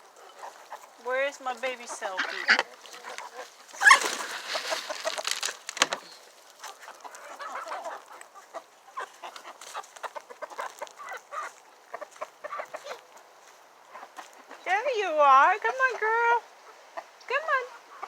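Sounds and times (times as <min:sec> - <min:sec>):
chickens clucking: 0:00.0 - 0:18.0
loud rustling: 0:03.7 - 0:06.3.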